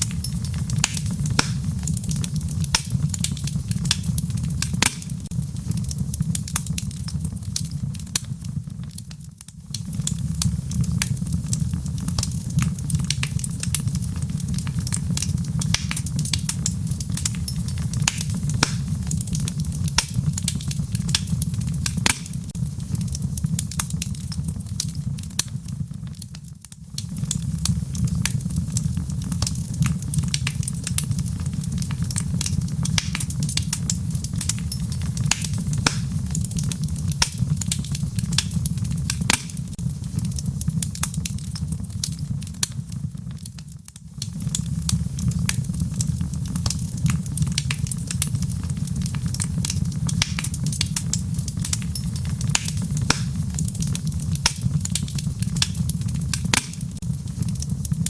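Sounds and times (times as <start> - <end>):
low rumble of flames: 0.0 - 58.0
wood fire crackling and popping: 0.0 - 58.0.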